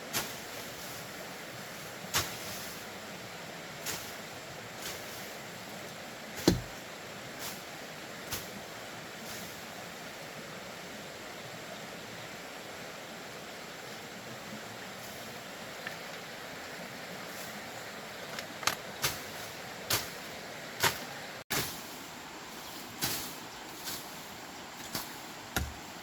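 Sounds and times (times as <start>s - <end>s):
steady hiss: 0.0s - 26.0s
sharp knock: 6.4s - 6.7s.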